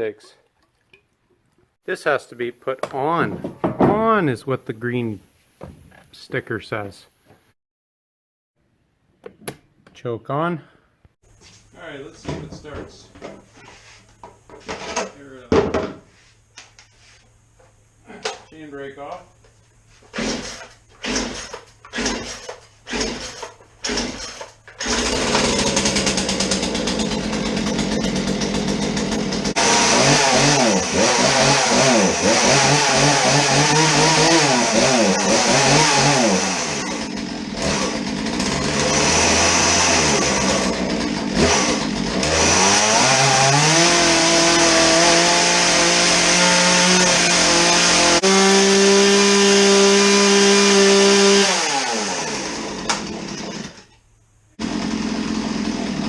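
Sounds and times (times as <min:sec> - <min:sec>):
recoil starter pulls: 0:20.1 - 0:43.0
chainsaw engine revving: 0:20.1 - 0:53.9, 0:54.6 - 0:56.0.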